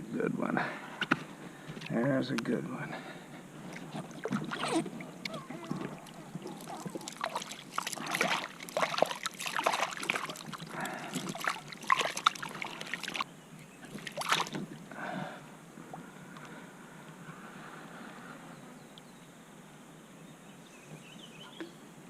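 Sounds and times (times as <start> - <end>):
water splashing and sloshing: 3.2 - 16.1.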